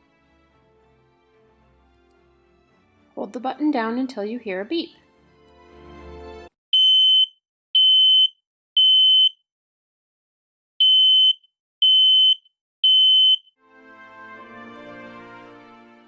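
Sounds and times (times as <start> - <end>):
smoke alarm beeping: 6.8 - 9.4, 10.8 - 13.5.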